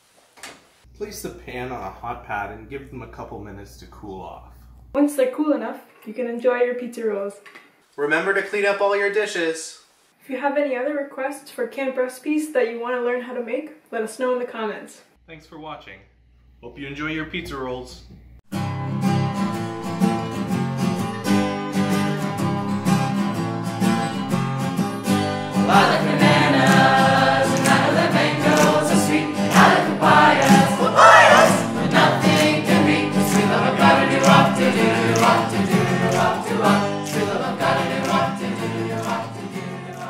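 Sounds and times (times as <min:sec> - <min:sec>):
strummed guitar: 0:18.5 - 0:40.0
group of voices singing: 0:25.6 - 0:40.0.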